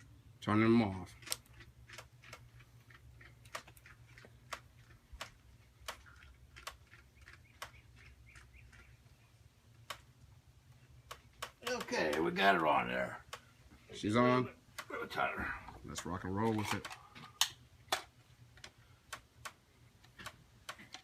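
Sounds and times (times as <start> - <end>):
sharp metallic clicks: 11.0 - 12.4, 16.4 - 21.0.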